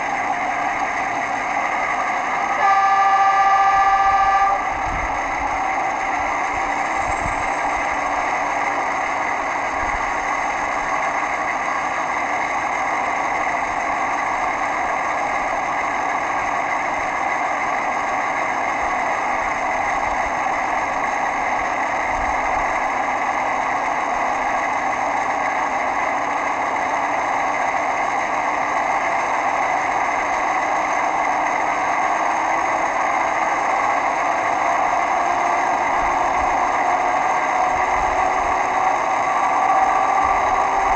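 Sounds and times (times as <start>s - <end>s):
high whine: 0.0s - 12.6s, 31.0s - 40.9s
diesel locomotive engine running: 0.0s - 40.9s.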